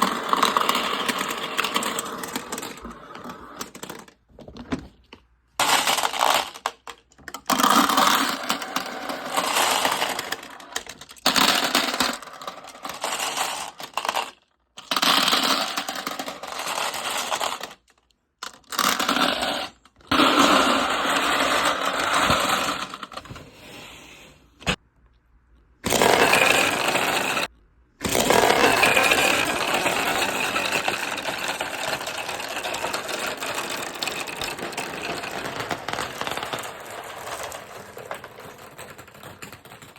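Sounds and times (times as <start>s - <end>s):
marbles rattling down a marble run: 0.0s - 4.2s, 5.6s - 23.1s, 25.9s - 39.9s.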